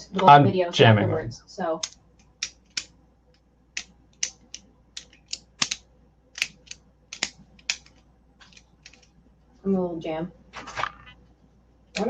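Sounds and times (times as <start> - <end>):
small object clicking: 1.8 - 9.2.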